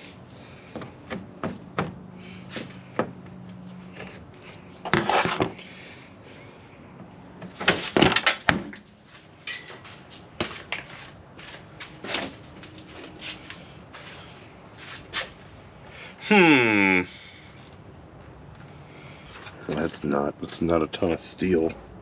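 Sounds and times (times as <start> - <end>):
truck parts knocking and rattling: 0.0 - 5.6, 7.0 - 13.2.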